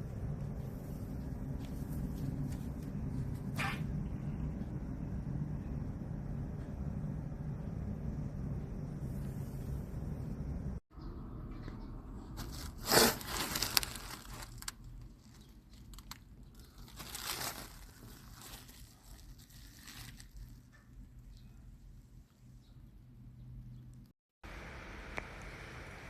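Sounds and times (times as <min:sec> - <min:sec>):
plastic crinkling: 0:12.4 - 0:20.8.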